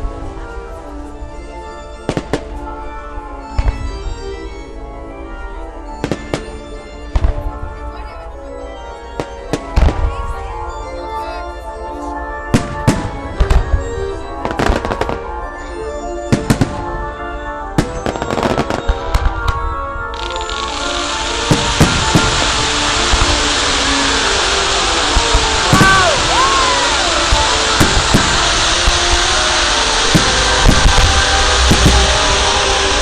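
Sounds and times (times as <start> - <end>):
orchestral music: 0.0 - 33.0
fireworks bursting: 6.0 - 7.5, 12.5 - 15.5, 16.3 - 33.0.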